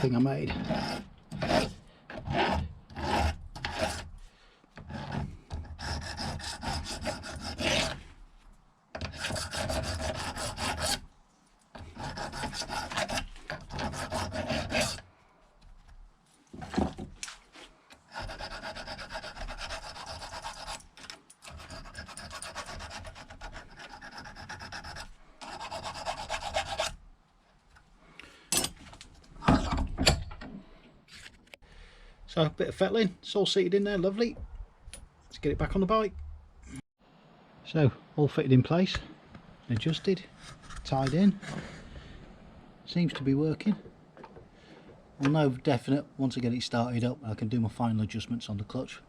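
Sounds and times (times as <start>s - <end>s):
metal file rasping: 0.4s - 4.2s, 4.8s - 8.0s, 9.0s - 11.1s, 11.8s - 15.1s, 18.1s - 27.0s.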